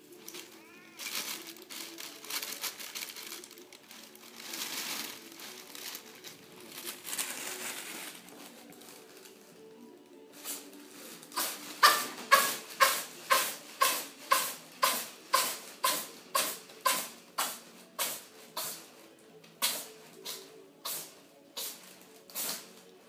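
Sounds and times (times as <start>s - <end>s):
cat sneezing: 11.4s - 18.8s.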